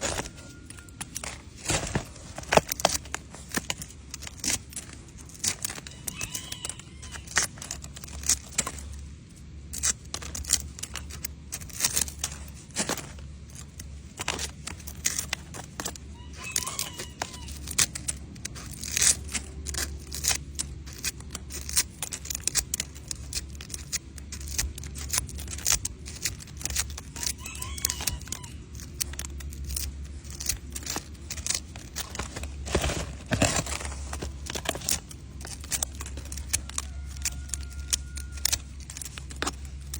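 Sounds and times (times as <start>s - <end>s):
steady low hum: 0.0s - 16.5s, 28.1s - 39.9s
dry leaves crackling: 0.0s - 39.9s.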